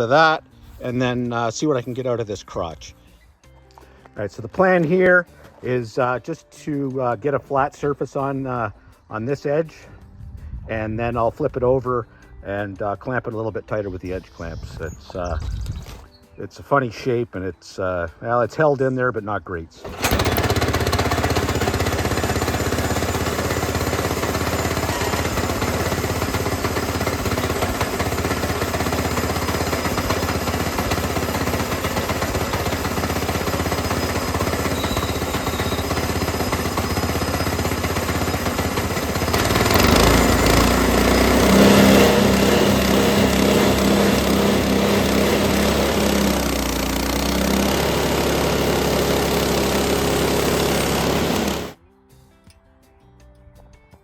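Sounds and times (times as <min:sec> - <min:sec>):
bandsaw mill cutting wood: 0:19.8 - 0:51.8.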